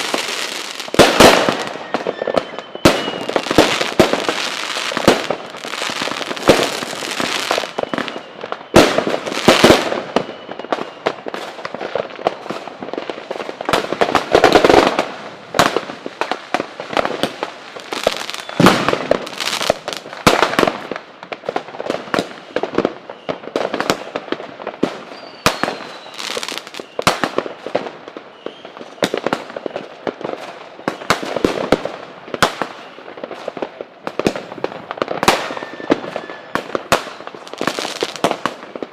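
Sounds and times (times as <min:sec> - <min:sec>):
rockets whistling: 0:00.0 - 0:11.2, 0:17.8 - 0:20.0, 0:25.0 - 0:27.1, 0:35.2 - 0:36.8
fireworks bangs and crackling: 0:00.0 - 0:38.9.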